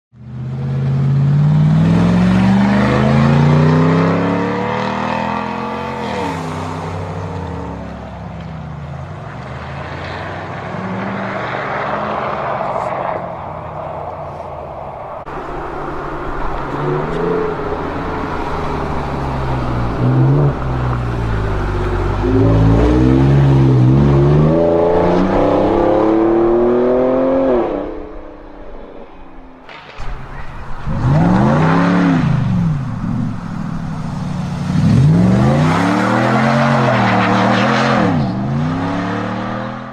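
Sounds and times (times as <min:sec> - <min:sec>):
truck engine accelerating: 0:00.2 - 0:28.3, 0:29.6 - 0:39.9
pickup truck engine accelerating: 0:29.7 - 0:39.9.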